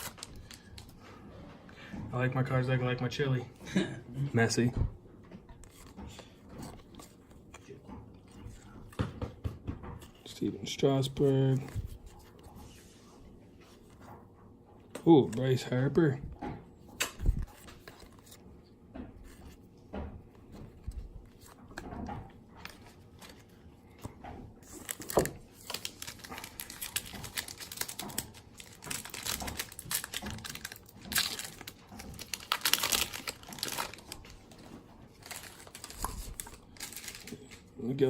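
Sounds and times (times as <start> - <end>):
card pack wrappers crinkling: 0.0 - 1.0, 24.6 - 37.6
cards being handled: 5.5 - 9.1, 11.1 - 12.9, 17.0 - 19.7, 22.6 - 37.7
wrappers tearing open: 24.7 - 34.3, 35.1 - 37.6.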